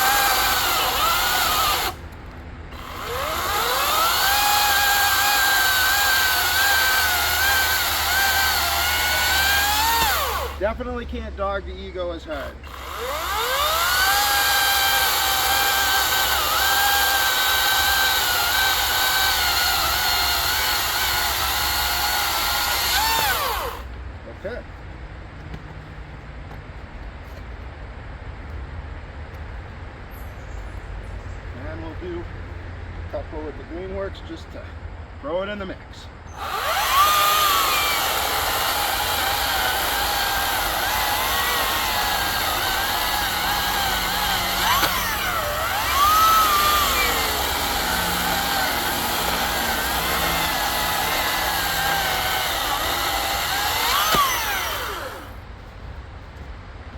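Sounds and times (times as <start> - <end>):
electric chainsaw cutting wood: 0.0 - 2.1, 2.7 - 10.7, 12.3 - 23.9, 36.4 - 55.4.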